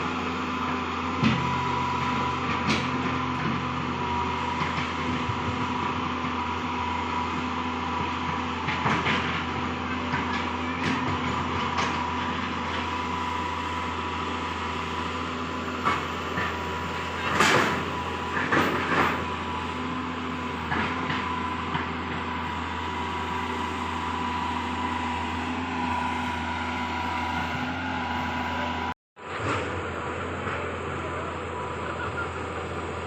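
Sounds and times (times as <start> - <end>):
engine whine: 0.0 - 33.0
excavator engine running: 0.0 - 33.0
clunks and scrapes: 15.8 - 22.5.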